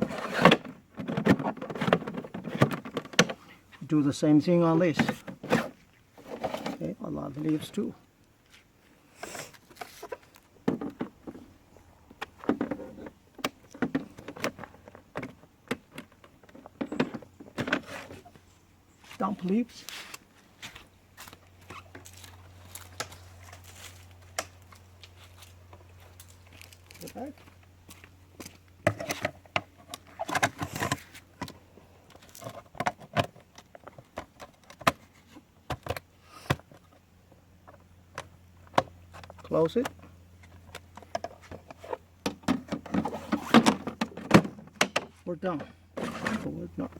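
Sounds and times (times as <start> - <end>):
plastic clicks and knocks: 1.0 - 3.4.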